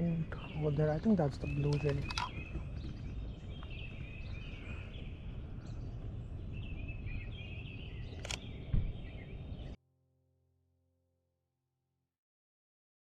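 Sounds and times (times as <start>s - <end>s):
small birds chirping: 0.0s - 9.8s
steady low rumble: 0.0s - 9.8s.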